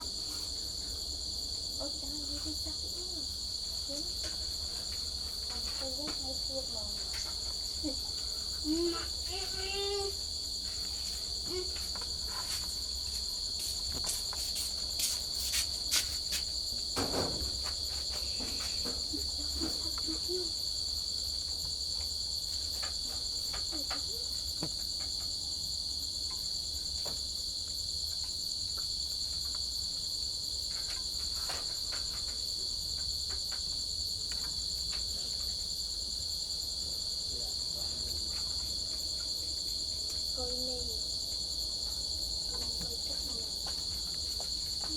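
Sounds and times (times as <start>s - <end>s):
crickets chirping: 0.0s - 44.9s.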